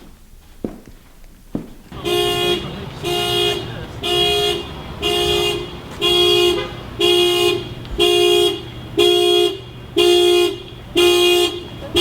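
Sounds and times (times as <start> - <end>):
car horn honking: 1.9 - 12.0.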